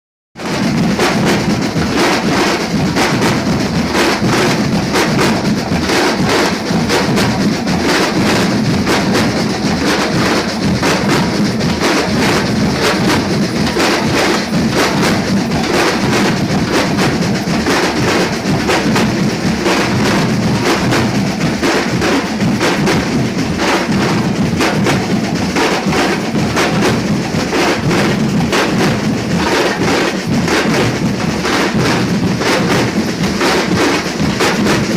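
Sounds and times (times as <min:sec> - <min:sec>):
percussion group drumming: 0:00.4 - 0:34.9.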